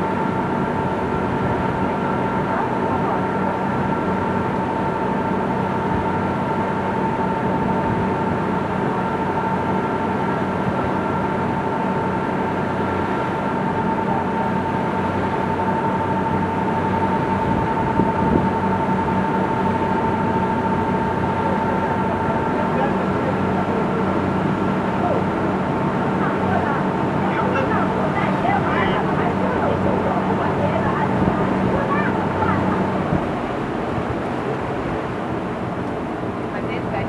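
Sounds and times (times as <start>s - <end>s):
boat engines droning: 0.0s - 37.0s
rushing water noise: 21.9s - 37.0s.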